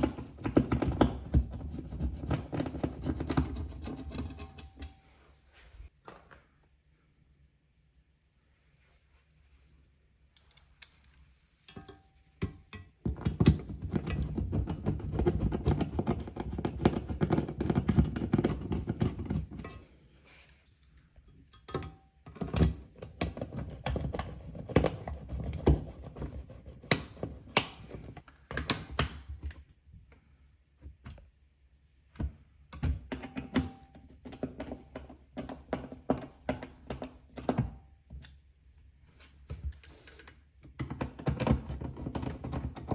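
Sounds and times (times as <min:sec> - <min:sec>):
hands clicking and knocking hardware: 0:00.0 - 0:05.0, 0:10.3 - 0:19.8, 0:20.8 - 0:29.8, 0:39.4 - 0:42.9.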